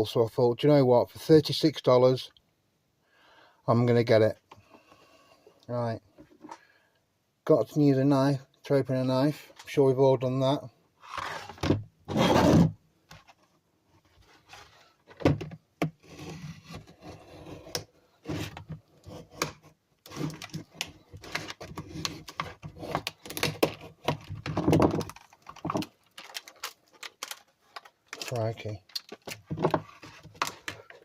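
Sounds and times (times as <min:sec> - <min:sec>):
knife cutting packaging: 0:16.0 - 0:24.4
packaging rustling: 0:20.1 - 0:31.0.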